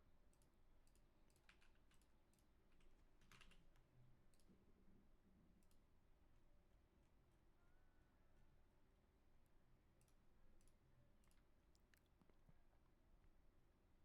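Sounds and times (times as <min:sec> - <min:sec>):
faint computer clicks: 0:00.3 - 0:04.6.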